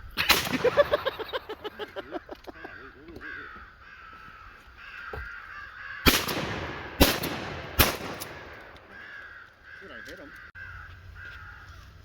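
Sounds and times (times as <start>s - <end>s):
crows cawing: 1.3s - 6.7s, 8.4s - 12.0s
shotgun blast: 6.0s - 8.8s.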